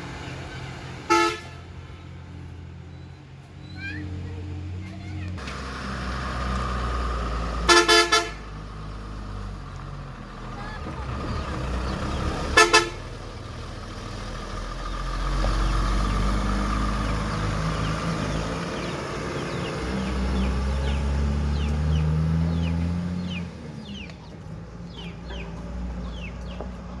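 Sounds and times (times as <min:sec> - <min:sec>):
heavy vehicle engine running: 0:00.0 - 0:27.0
vehicle horn toots: 0:01.1 - 0:01.6, 0:07.7 - 0:08.5, 0:12.5 - 0:13.1.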